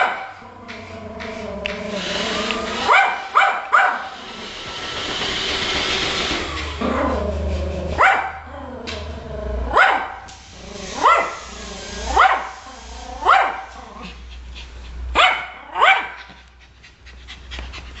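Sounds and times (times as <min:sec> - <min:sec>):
small dog barking: 0:00.0 - 0:00.4, 0:02.8 - 0:04.2, 0:08.0 - 0:08.5, 0:09.7 - 0:10.3, 0:11.0 - 0:11.4, 0:12.1 - 0:12.6, 0:13.2 - 0:13.8, 0:15.2 - 0:16.2.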